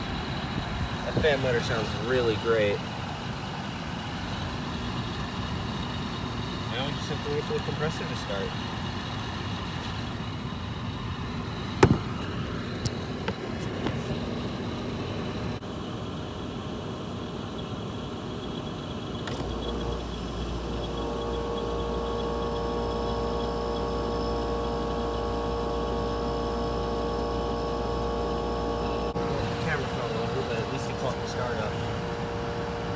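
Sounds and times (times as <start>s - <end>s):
compressor humming: 0.0s - 17.2s, 19.1s - 32.9s
camera falling over knock: 11.8s - 12.3s
dehumidifier fan running: 19.1s - 32.9s
small clicks: 19.3s - 21.3s.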